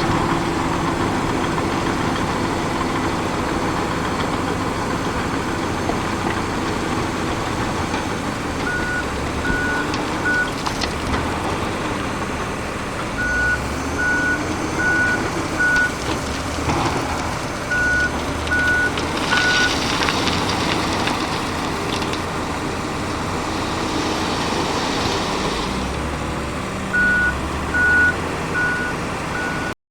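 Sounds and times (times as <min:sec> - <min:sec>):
diesel truck running: 0:00.0 - 0:29.8
reversing alarm beeping: 0:07.3 - 0:10.6, 0:13.2 - 0:16.1, 0:17.7 - 0:19.9, 0:26.9 - 0:29.8.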